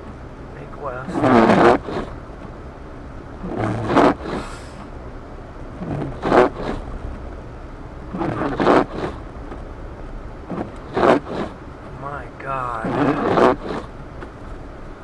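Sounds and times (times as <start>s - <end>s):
car driving low rumble: 0.0s - 15.0s
windshield wipers scraping swish: 0.9s - 2.6s, 3.4s - 5.0s, 5.7s - 7.4s, 8.1s - 9.6s, 10.4s - 14.8s.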